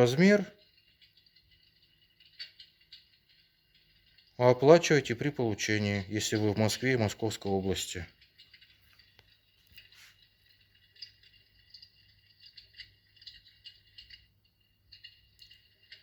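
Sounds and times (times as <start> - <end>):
faint crackling and ticking: 0.0 - 16.0.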